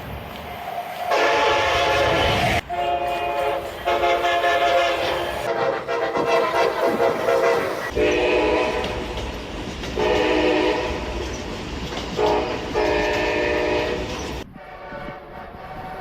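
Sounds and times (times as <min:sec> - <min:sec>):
passing train rumble: 0:00.0 - 0:16.0
train air horn chord: 0:01.1 - 0:09.1, 0:10.0 - 0:11.1, 0:12.2 - 0:16.0.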